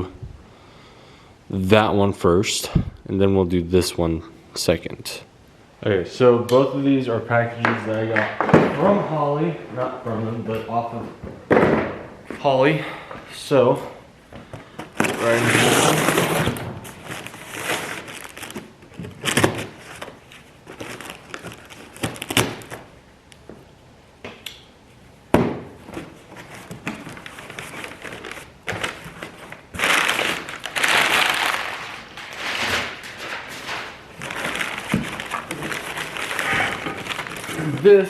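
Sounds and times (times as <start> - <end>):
knocks and thuds of handling box: 11.2 - 12.1, 25.3 - 27.0
packing material rustling: 14.8 - 22.9, 26.0 - 38.0.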